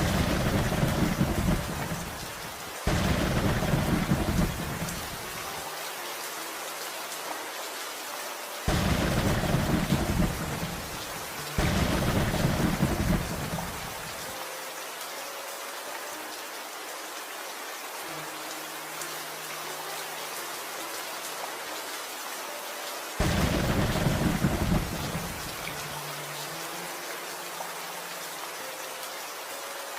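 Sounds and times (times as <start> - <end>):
thunder rolling: 0.0 - 2.2, 2.9 - 5.2, 8.7 - 11.0, 11.6 - 14.0, 23.2 - 25.5
steady rain falling: 0.0 - 29.9.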